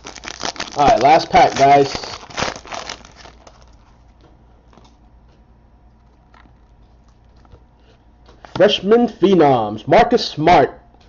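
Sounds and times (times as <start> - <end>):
foil card pack crinkling: 0.0 - 4.1.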